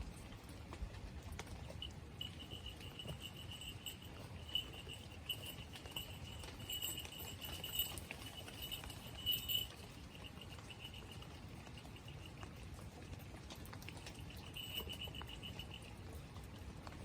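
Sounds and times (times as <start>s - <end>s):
raindrops pattering: 0.0s - 17.0s
cricket chirping: 1.8s - 12.3s, 14.3s - 16.0s.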